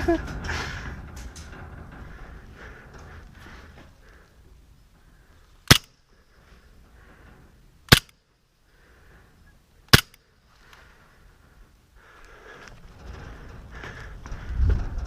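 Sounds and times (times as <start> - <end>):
airsoft gun shots: 7.9 - 8.2, 9.9 - 10.2.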